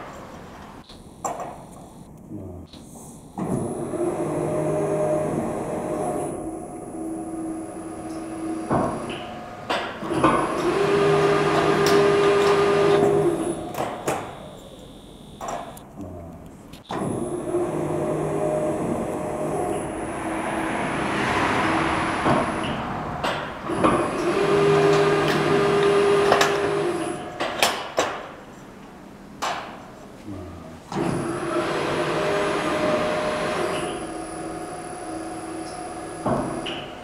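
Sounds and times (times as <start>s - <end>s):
folding machine motor whine: 0.8s - 2.1s, 2.9s - 15.9s, 16.8s - 27.4s, 30.8s - 37.0s.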